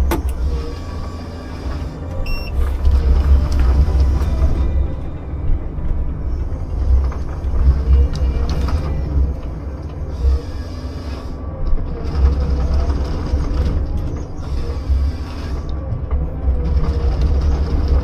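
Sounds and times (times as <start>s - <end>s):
heavy machine rumbling: 0.0s - 18.0s.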